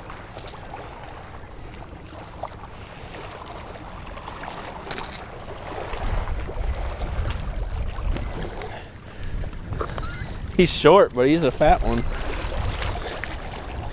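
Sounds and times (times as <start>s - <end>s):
wind buffeting microphone: 5.6s - 13.9s.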